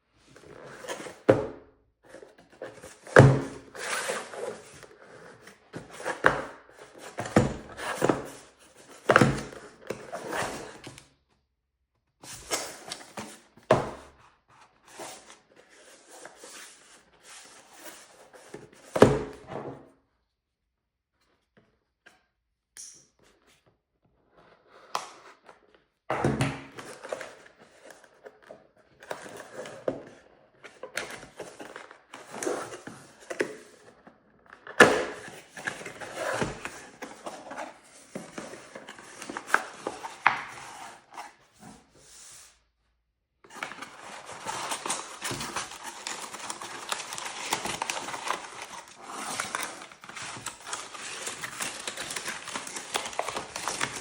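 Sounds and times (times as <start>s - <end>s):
packaging rustling: 43.5s - 54.0s
packaging crinkling: 43.6s - 54.0s.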